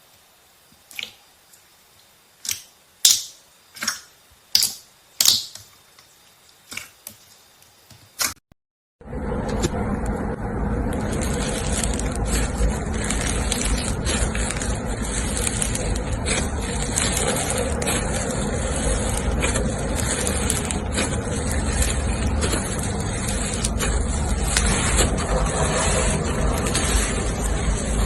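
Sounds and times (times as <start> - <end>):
slime squishing and crackling: 6.4 - 7.6, 10.6 - 28.0.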